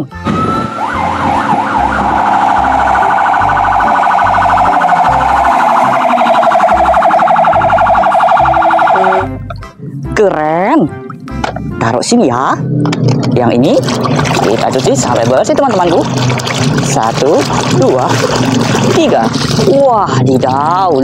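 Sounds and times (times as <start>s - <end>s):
fire engine siren wailing: 0.2s - 9.4s
fast electronic siren yelp: 0.3s - 9.4s.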